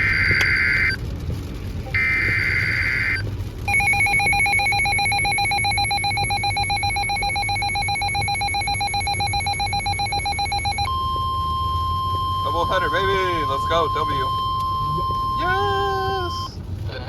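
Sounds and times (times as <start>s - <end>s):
two-tone alert signal: 1.9s - 15.4s.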